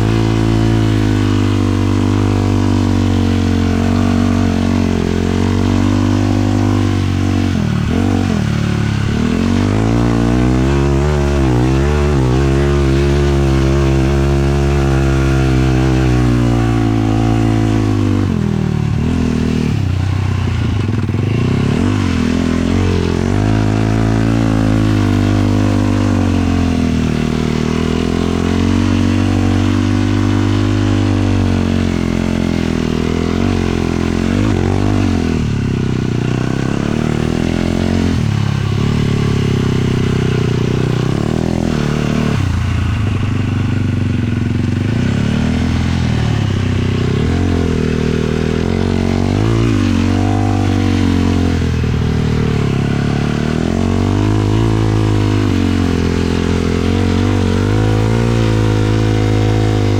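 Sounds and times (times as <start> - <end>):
quad engine revving: 0.0 - 59.9.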